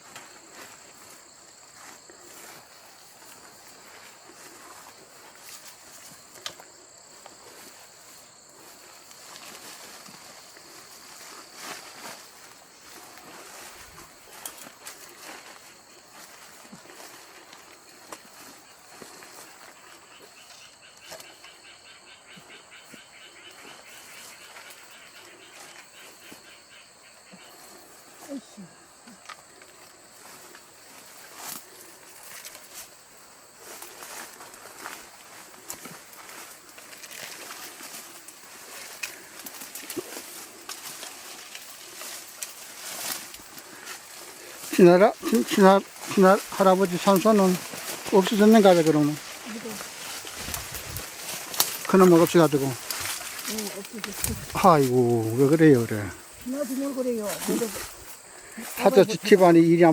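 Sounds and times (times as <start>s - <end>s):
faint rustles: 0.0s - 59.9s
insects chirping: 0.0s - 59.9s
faint clicks and rustles: 29.0s - 59.0s.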